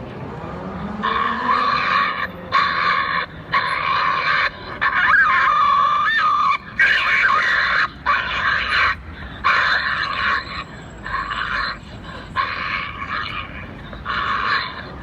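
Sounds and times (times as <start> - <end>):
badger screaming: 1.0 - 11.8.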